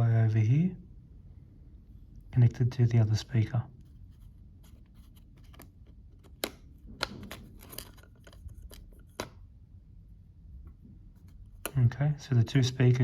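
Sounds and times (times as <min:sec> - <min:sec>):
small sharp clicks and scrapes: 0:03.8 - 0:09.4.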